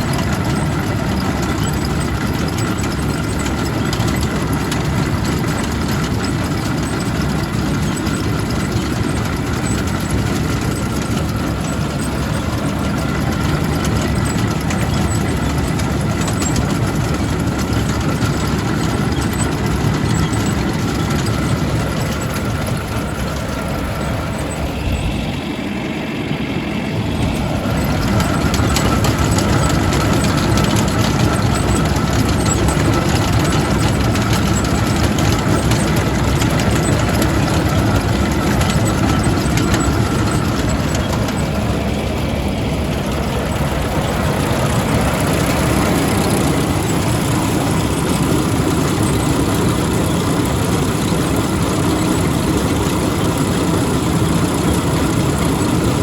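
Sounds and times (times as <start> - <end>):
tractor engine running: 0.0 - 56.0
thin steady whine: 4.7 - 56.0.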